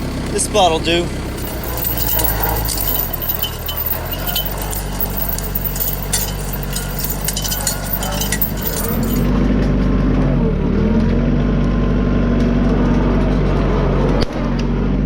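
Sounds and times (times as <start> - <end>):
sharp clinks and cracks: 0.0 - 0.4, 1.2 - 9.3.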